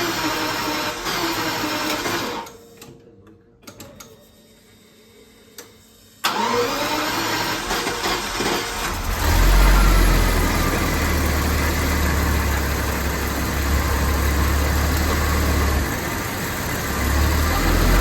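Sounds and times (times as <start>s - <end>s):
car engine misfiring: 6.2s - 18.0s.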